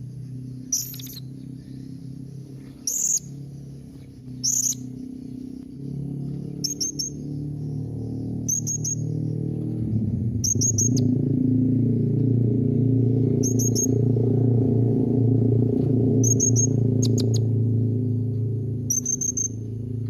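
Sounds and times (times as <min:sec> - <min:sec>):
steady low drone: 0:00.0 - 0:20.0
parrot chirping: 0:00.7 - 0:01.9, 0:02.8 - 0:03.3, 0:04.4 - 0:05.0, 0:06.6 - 0:07.2, 0:16.2 - 0:17.4, 0:18.9 - 0:19.6.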